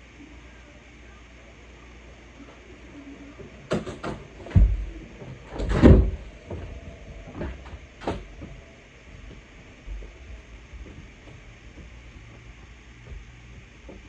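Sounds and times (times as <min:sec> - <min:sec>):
door knocks and thuds: 0:03.7 - 0:05.0.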